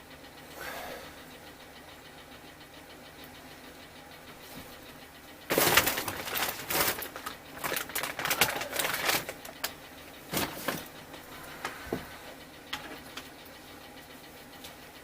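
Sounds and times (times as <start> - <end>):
parts and tools clattering: 5.5 - 12.1, 12.7 - 13.3.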